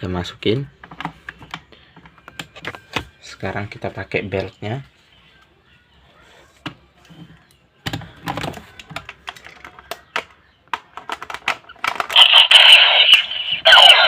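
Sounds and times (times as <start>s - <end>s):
plastic toy clicks and rattles: 8.3s - 12.4s
toy belt electronic sound: 12.0s - 14.0s.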